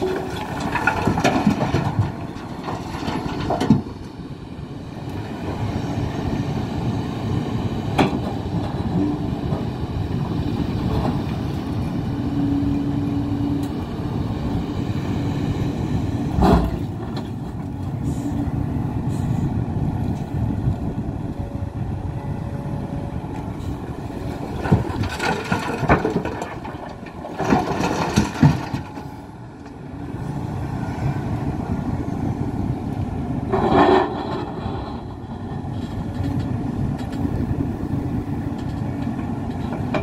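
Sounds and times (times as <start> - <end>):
excavator diesel engine: 0.0 - 40.0
bucket clanking on rock: 24.6 - 28.9.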